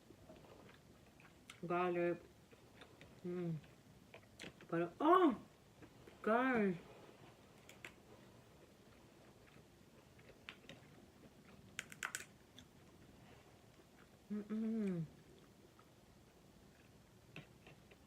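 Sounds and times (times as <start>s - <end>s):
person humming mmm: 3.2s - 3.7s, 14.3s - 15.2s
wet chewing clicks: 9.4s - 12.7s.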